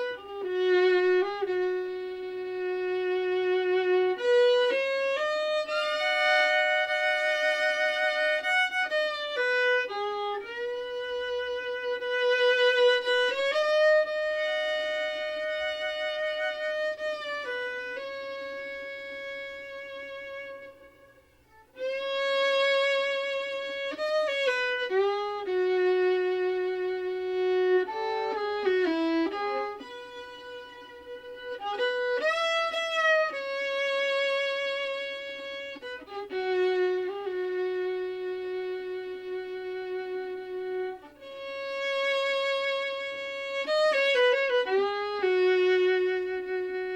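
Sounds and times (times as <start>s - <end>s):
slow violin melody: 0.0s - 46.9s.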